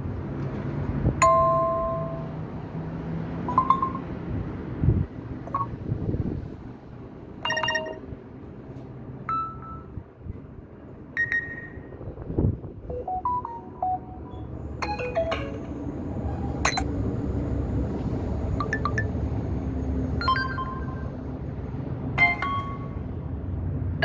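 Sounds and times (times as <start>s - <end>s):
phone notification chimes and beeps: 3.5s - 4.1s, 5.5s - 5.8s, 7.5s - 8.1s, 12.9s - 15.4s, 16.7s - 16.9s, 22.2s - 22.9s.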